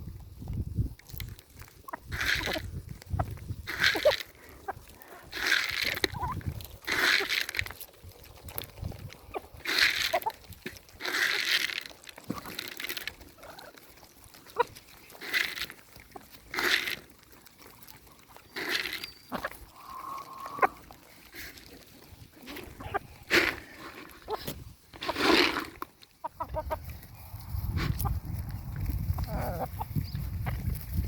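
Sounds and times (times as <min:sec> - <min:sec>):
farm animals harsh cries: 0:09.3 - 0:25.6.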